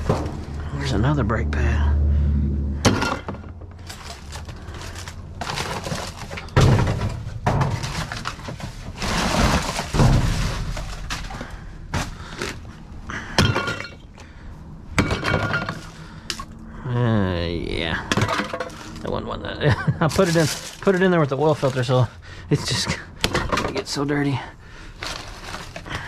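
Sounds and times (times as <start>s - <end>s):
metal parts clattering in trash can: 2.8s - 12.6s, 13.4s - 14.2s, 15.0s - 16.5s, 18.0s - 19.2s, 20.0s - 24.0s, 24.9s - 26.0s.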